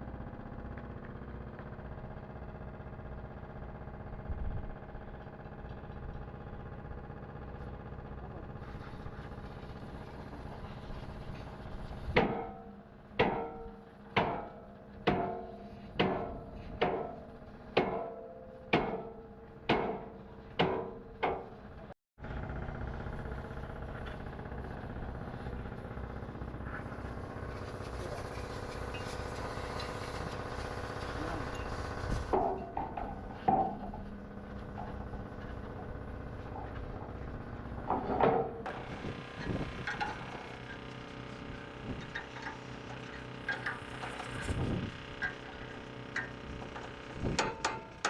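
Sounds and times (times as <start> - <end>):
steady hum: 6.5 - 47.8
hammer striking steel frame: 11.4 - 21.9, 28.1 - 40.7, 41.4 - 48.0.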